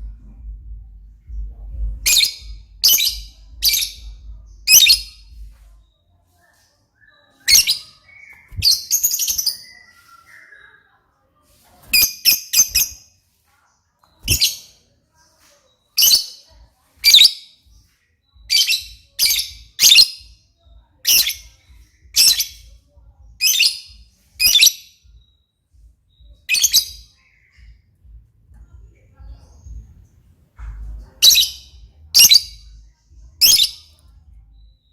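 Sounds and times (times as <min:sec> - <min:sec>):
lovebird chirping: 0:01.3 - 0:06.1, 0:07.0 - 0:11.0, 0:14.0 - 0:14.8, 0:21.0 - 0:22.7, 0:23.4 - 0:25.4, 0:30.8 - 0:34.9.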